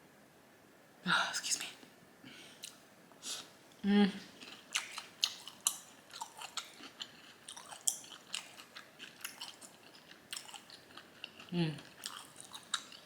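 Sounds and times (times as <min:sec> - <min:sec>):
wet lip-smacks and chewing: 0:04.4 - 0:13.0.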